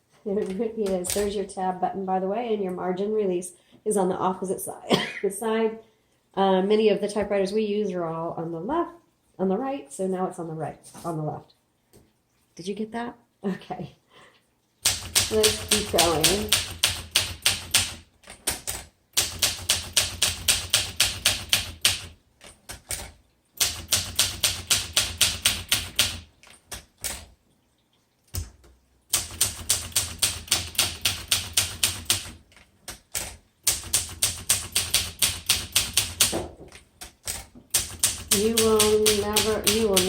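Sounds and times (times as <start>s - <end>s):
manual typewriter keystrokes: 14.8s - 27.3s, 28.3s - 40.0s.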